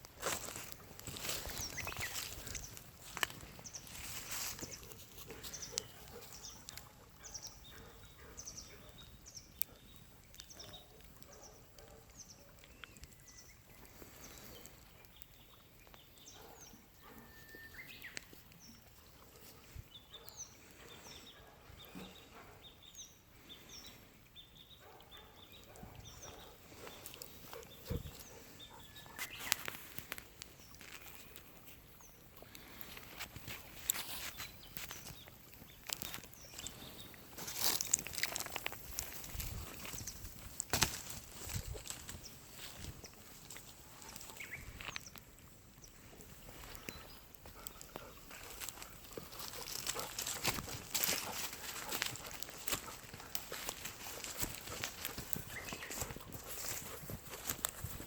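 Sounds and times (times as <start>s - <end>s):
bonfire crackling and popping: 29.4s - 31.6s, 32.4s - 56.7s.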